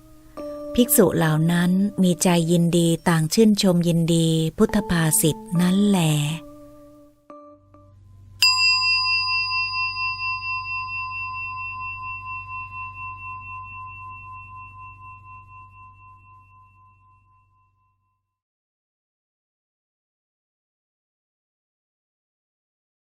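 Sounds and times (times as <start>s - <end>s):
bell ringing: 8.4s - 18.1s.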